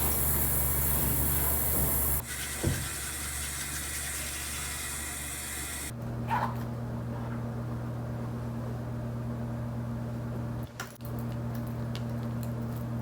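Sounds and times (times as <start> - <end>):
low motor hum: 0.0 - 2.2.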